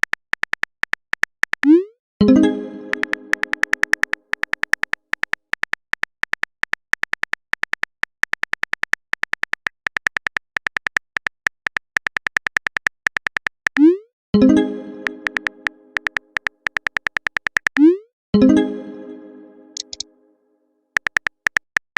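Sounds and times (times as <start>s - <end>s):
keyboard typing clicks: 0.0s - 18.5s, 19.8s - 20.1s, 21.0s - 21.9s
message chime: 2.2s - 3.9s, 14.4s - 16.2s, 17.8s - 20.1s.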